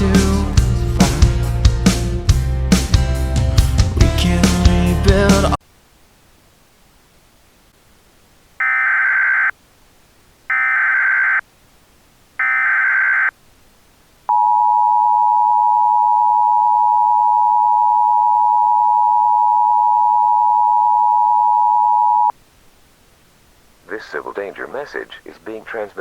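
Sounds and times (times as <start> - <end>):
short data bursts: 8.6 - 9.6, 10.5 - 11.4, 12.4 - 13.4.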